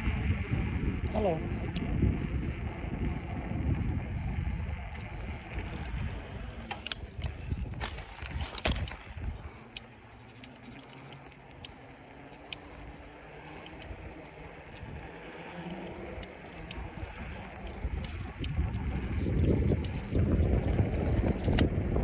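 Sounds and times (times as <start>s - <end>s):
bicycle clicks and rattles: 0.0s - 22.0s
wind rumbling on microphone: 0.0s - 22.0s
faint scattered ticks: 9.1s - 21.7s.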